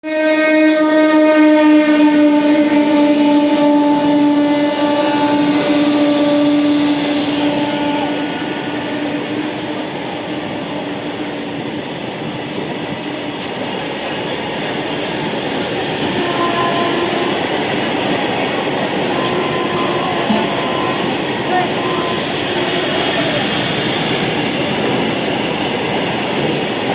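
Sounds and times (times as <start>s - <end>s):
train horn: 0.0s - 11.8s, 16.0s - 23.8s
train wagons rumbling and rattling: 2.3s - 26.9s.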